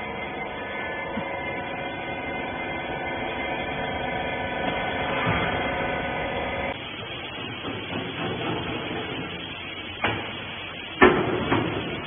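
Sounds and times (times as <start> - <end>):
hydraulic baler humming: 0.0 - 12.0.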